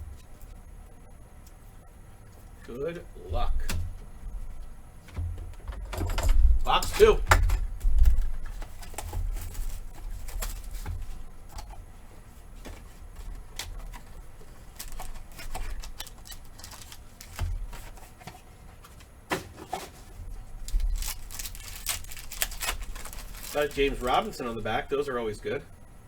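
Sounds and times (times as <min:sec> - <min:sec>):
cardboard and wrapper rustling: 0:05.2 - 0:24.9.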